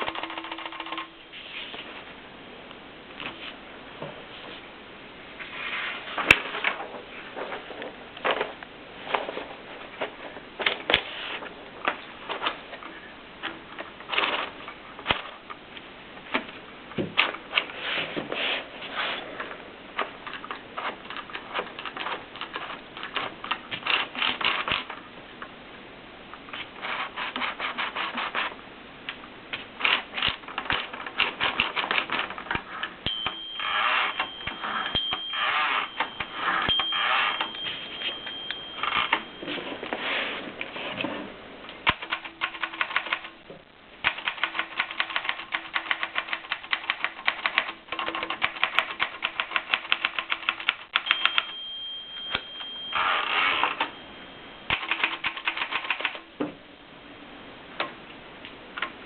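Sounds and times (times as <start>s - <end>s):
typewriter keystroke clacks: 0.0s - 1.1s, 20.3s - 24.9s, 29.8s - 32.7s, 41.8s - 43.3s, 44.0s - 51.5s, 54.7s - 56.2s.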